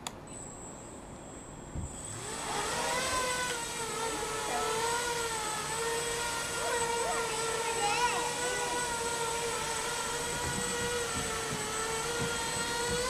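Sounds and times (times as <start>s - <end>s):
quadcopter motors whining: 0.3s - 13.0s.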